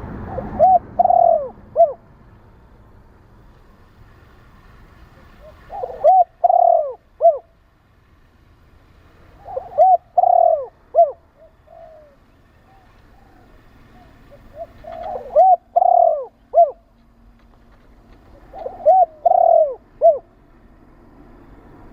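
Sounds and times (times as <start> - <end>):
dove cooing: 0.2 - 2.0, 5.3 - 7.6, 9.3 - 16.9, 18.2 - 20.4.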